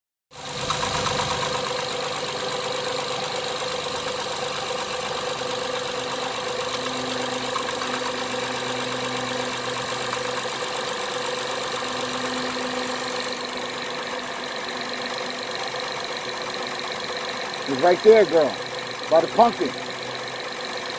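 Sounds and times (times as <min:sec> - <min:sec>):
fast light engine ticking: 0:00.4 - 0:20.9
car engine idling: 0:13.3 - 0:20.9.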